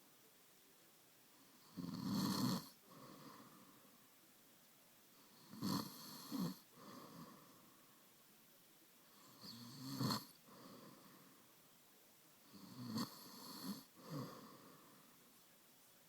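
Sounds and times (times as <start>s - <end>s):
man snoring: 1.7s - 3.4s, 5.4s - 7.4s, 9.3s - 10.4s, 12.5s - 14.8s
soft breath: 2.8s - 4.1s, 6.7s - 8.2s, 10.3s - 11.8s, 13.8s - 15.4s.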